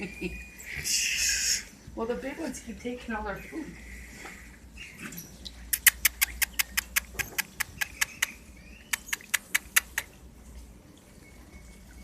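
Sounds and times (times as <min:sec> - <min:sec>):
animal clicking call: 0:05.7 - 0:10.1.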